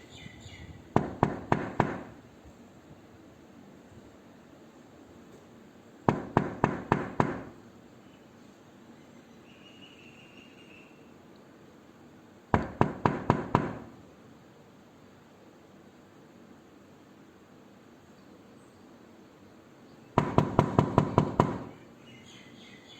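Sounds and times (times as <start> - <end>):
knocking on a door: 1.0 - 2.2, 6.1 - 7.6, 12.6 - 14.0, 20.2 - 21.8.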